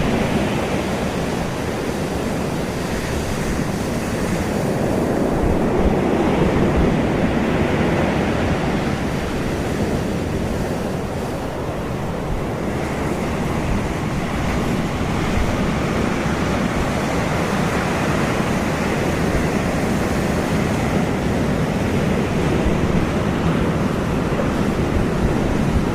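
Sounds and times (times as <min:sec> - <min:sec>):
ocean surf rushing: 0:00.0 - 0:25.9.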